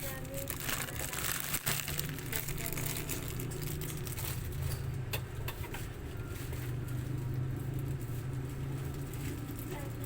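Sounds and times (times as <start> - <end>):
low mechanical hum: 0.0 - 10.0.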